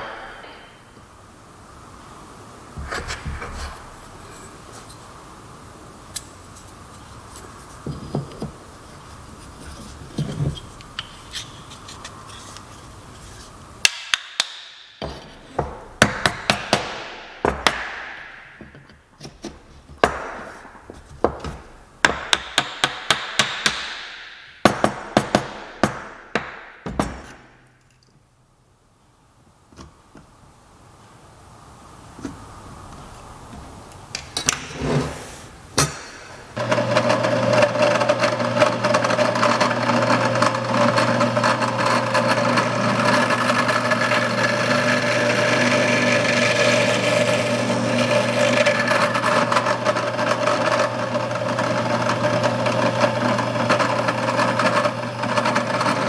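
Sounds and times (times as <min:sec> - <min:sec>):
hammering on wood: 0:00.0 - 0:01.1, 0:13.8 - 0:27.6.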